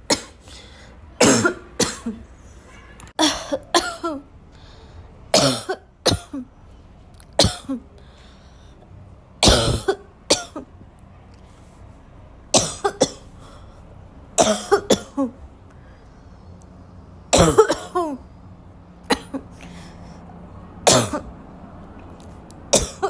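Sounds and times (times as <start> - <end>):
person coughing harshly: 0.0 - 0.5, 1.2 - 4.3, 5.3 - 6.5, 7.4 - 7.9, 9.4 - 10.7, 12.5 - 13.3, 14.4 - 15.4, 17.3 - 18.2, 19.0 - 19.6, 20.9 - 21.3, 22.7 - 23.0.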